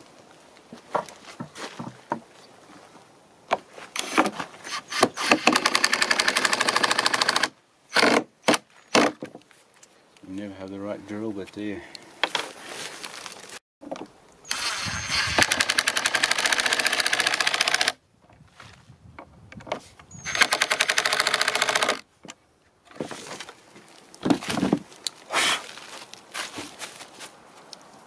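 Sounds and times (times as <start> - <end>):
power driver driving screws: 4.0 - 9.2, 14.5 - 18.0, 20.1 - 22.0.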